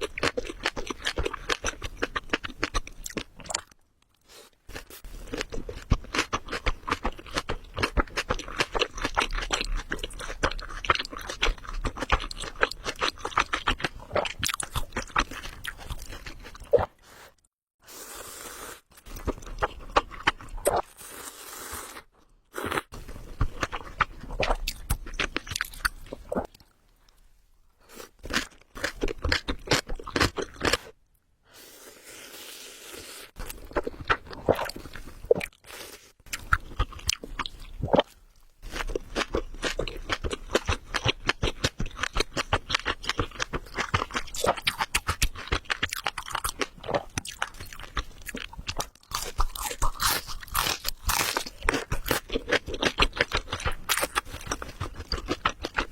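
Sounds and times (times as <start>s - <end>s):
chewing with crackly clicks: 38.8s - 55.9s.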